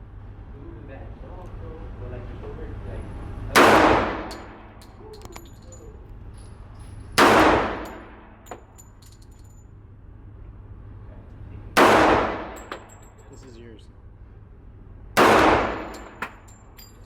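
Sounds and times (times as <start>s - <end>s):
echoing pistol shots: 3.6s - 4.8s, 7.2s - 8.4s, 11.8s - 12.9s, 15.2s - 16.4s
light metallic clinks: 4.2s - 7.2s, 7.8s - 9.7s, 12.5s - 13.7s, 15.8s - 17.0s.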